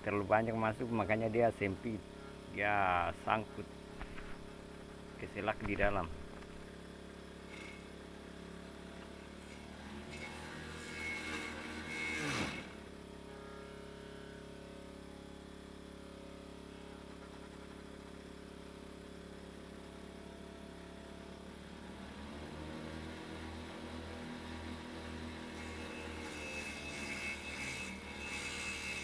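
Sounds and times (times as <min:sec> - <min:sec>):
electric motor hum: 0:00.0 - 0:15.6.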